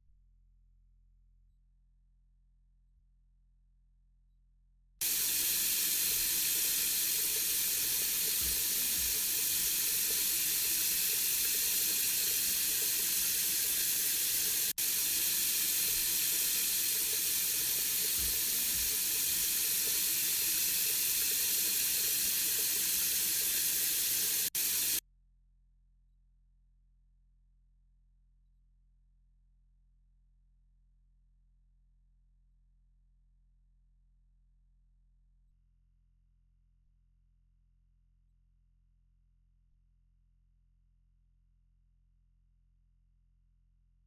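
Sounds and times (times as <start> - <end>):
water rushing into washing machine: 5.0 - 25.0.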